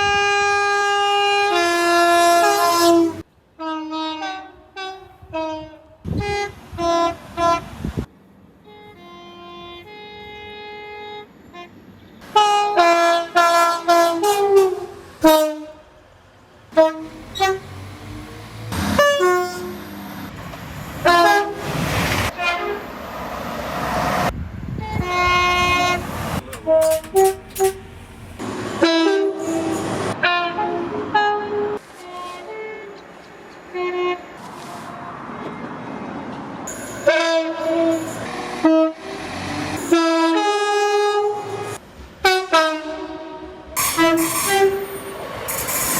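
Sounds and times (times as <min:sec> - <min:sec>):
train air horns blasting: 0:00.0 - 0:08.0, 0:08.6 - 0:16.0, 0:16.7 - 0:17.8, 0:18.8 - 0:20.0, 0:21.0 - 0:22.9, 0:24.6 - 0:33.0, 0:36.7 - 0:45.9
passing train rushing: 0:11.3 - 0:45.9.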